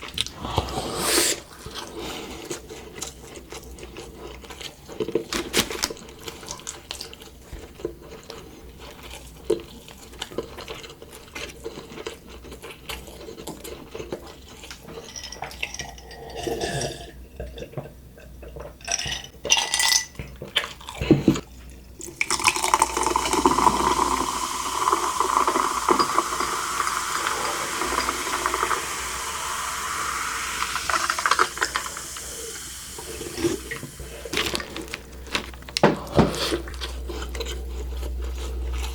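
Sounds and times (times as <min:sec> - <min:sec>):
close-miked chewing: 0:00.0 - 0:15.9, 0:36.4 - 0:38.9
liquid pouring: 0:22.0 - 0:35.4.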